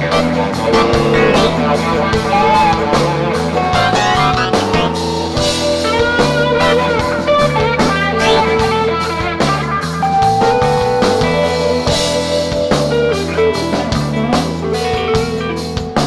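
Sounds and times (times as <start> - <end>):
electric guitar lead notes: 0.0 - 15.5
bass guitar: 0.0 - 16.0
drum kit beat: 0.6 - 14.3.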